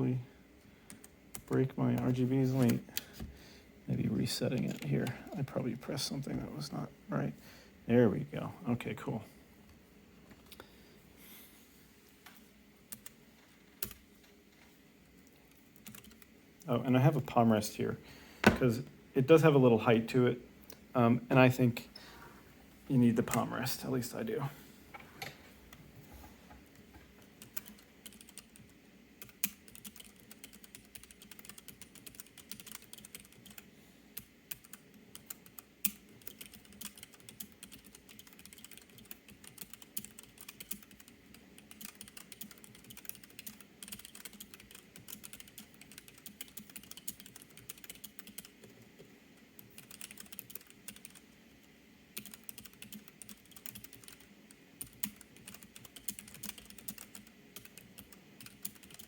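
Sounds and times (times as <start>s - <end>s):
mechanical keyboard typing: 13.8s - 14.0s, 15.4s - 16.3s, 27.4s - 48.8s, 49.6s - 51.2s, 52.1s - 59.0s.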